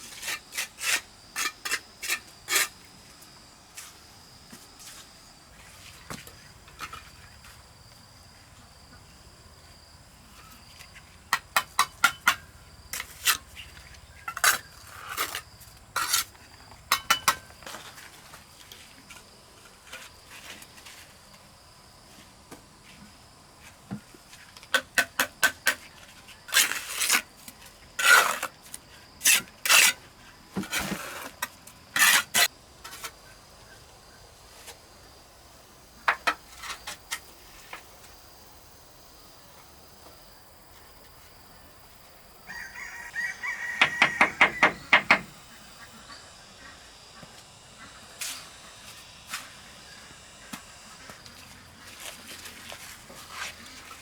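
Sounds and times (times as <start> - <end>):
metal tool scraping brick: 0.0 - 2.8, 14.3 - 17.4, 28.0 - 28.6, 29.2 - 30.0, 32.0 - 32.5
high insect drone: 30.8 - 54.0.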